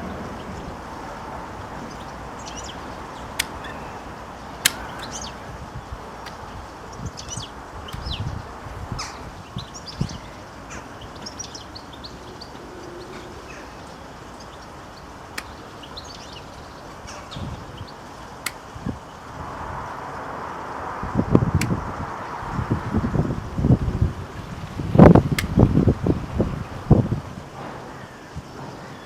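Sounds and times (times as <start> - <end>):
small birds chirping: 0.2 - 23.0
sharp clicks: 1.8 - 5.5, 6.1 - 9.0, 15.1 - 16.7, 18.2 - 18.9, 21.5 - 21.8, 25.1 - 25.8.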